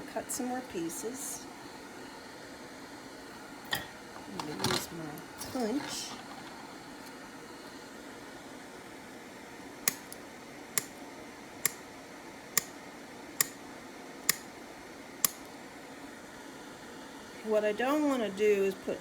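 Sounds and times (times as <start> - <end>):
hand punch clicking through solder: 9.8 - 10.2, 10.8 - 11.0, 11.6 - 11.9, 12.6 - 12.8, 13.4 - 13.6, 14.3 - 14.5, 15.2 - 15.5.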